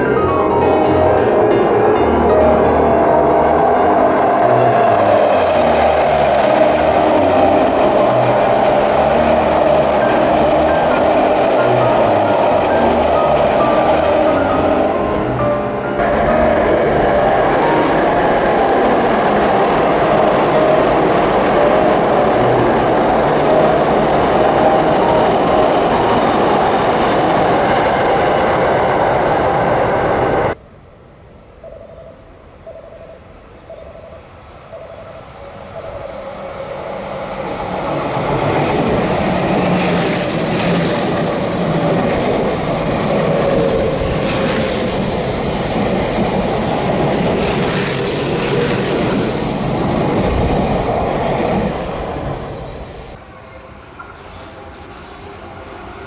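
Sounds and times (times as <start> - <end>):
electric train passing: 0.0 - 56.0
train wheels clacking over rail joints: 4.0 - 14.8, 37.3 - 51.7.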